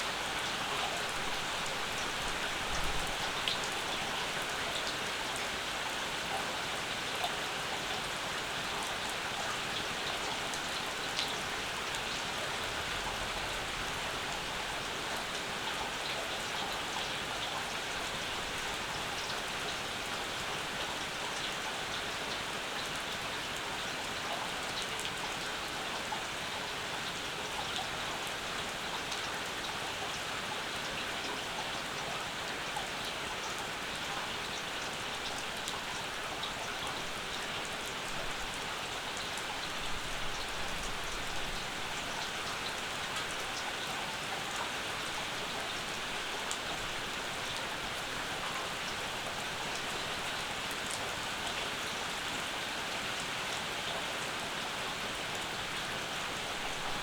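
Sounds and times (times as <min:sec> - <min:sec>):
steady rain: 0:00.0 - 0:57.0
raindrops ticking on surfaces: 0:00.1 - 0:06.1, 0:32.6 - 0:57.0.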